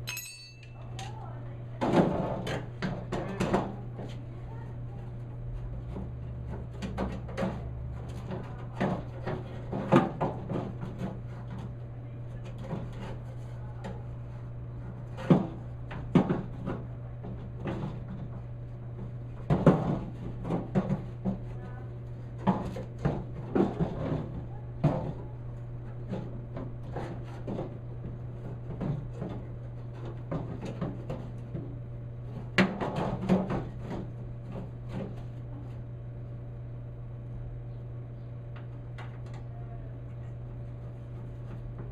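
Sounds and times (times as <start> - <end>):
steady low hum: 0.0 - 41.9
metal clunks and rattles: 22.4 - 35.4.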